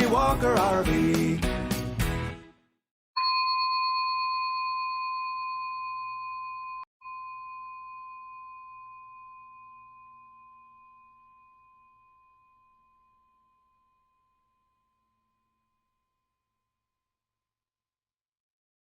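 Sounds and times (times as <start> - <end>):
chime tone ringing: 3.2 - 14.3.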